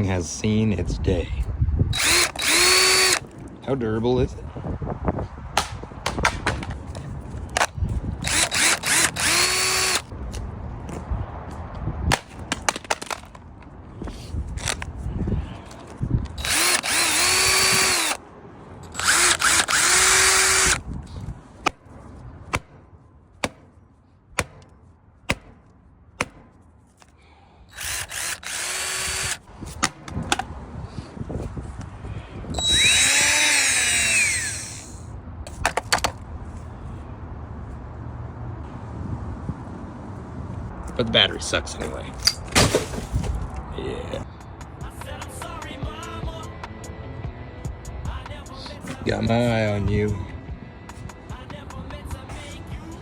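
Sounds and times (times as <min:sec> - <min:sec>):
impact driver whine and rattle: 0:01.9 - 0:03.3, 0:07.5 - 0:10.1, 0:14.6 - 0:14.9, 0:16.4 - 0:18.2, 0:18.8 - 0:20.8, 0:27.7 - 0:30.5, 0:32.5 - 0:35.1.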